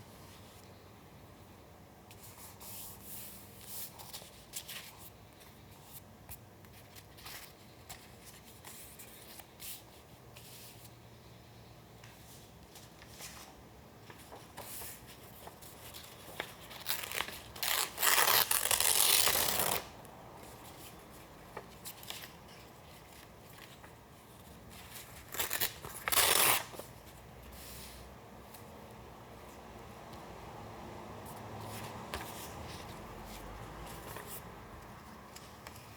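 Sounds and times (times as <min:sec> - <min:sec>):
paper handling rustle: 0:12.0 - 0:28.8, 0:31.3 - 0:35.9
paper tearing: 0:16.8 - 0:19.9, 0:25.3 - 0:26.7.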